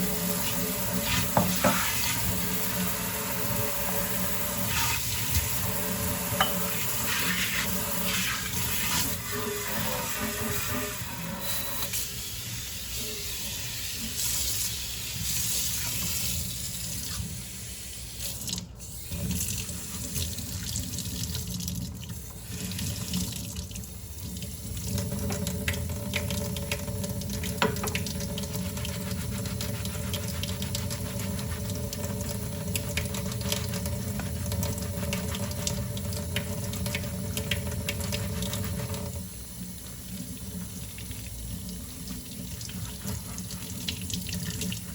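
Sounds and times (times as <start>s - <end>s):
tap water running into sink: 0.0s - 12.0s, 18.2s - 44.9s
dishes clinking: 6.4s - 6.8s.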